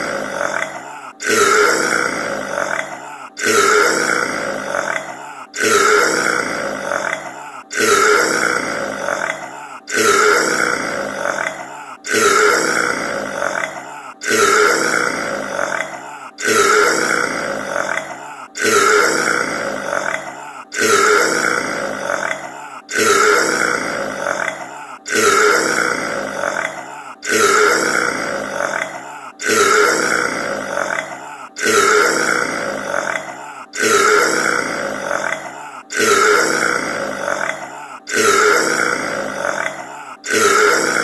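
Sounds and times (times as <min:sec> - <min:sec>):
man belching loudly: 0:00.0 - 0:41.0.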